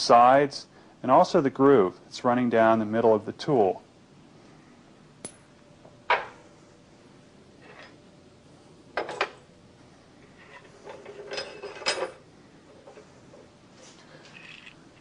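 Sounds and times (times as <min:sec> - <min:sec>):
metal objects clinking on bench: 0:10.5 - 0:12.2
rattle of small clicks: 0:14.3 - 0:15.0.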